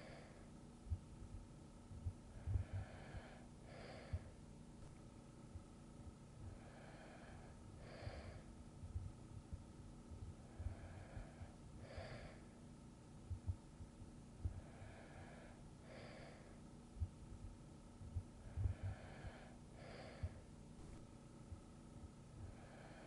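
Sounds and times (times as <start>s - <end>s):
person breathing softly: 0.0s - 1.0s, 2.0s - 5.0s, 6.4s - 9.2s, 10.3s - 12.6s, 14.4s - 17.2s, 18.2s - 21.1s, 22.4s - 23.0s
faint low thumps: 0.8s - 3.0s, 8.8s - 11.5s, 13.2s - 14.7s, 17.0s - 19.4s.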